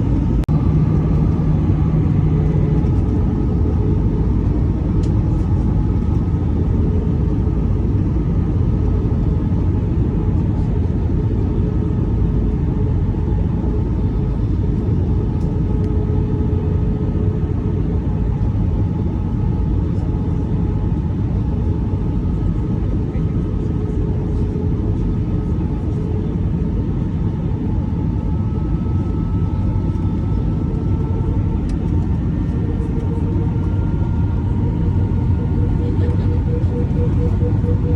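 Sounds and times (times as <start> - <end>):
jet engine cabin drone: 0.0 - 37.9
engine tones: 33.6 - 37.9.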